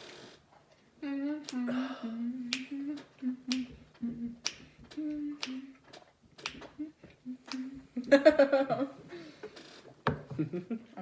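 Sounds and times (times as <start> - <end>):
person humming softly: 1.0 - 5.8, 6.4 - 8.2
finger snaps: 1.4 - 1.7, 2.5 - 3.8, 4.4 - 5.7, 6.4 - 6.8, 7.4 - 7.8.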